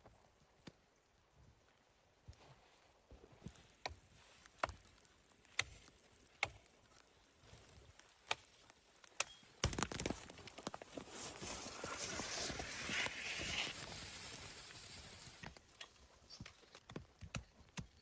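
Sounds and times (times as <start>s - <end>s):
continuous crunching and rustling: 0.0s - 18.0s
footsteps crunching in snow: 9.7s - 15.4s.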